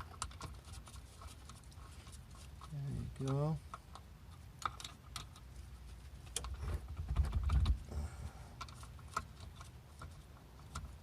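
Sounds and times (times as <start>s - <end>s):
light clicks and taps: 0.0s - 7.8s.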